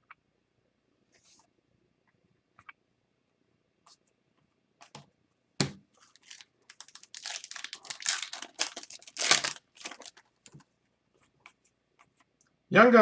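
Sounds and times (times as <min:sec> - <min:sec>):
foil wrapper crinkling and tearing: 0:06.0 - 0:10.6.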